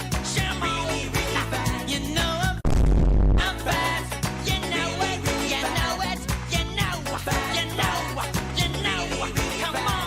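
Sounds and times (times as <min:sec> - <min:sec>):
pop-rock song with male singer: 0:00.0 - 0:02.6, 0:03.4 - 0:10.0
deep loud boom: 0:02.6 - 0:03.5.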